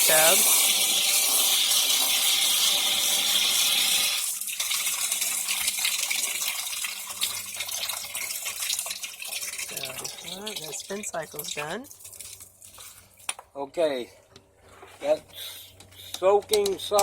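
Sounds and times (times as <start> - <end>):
water draining into a bathtub: 0.0 - 13.4.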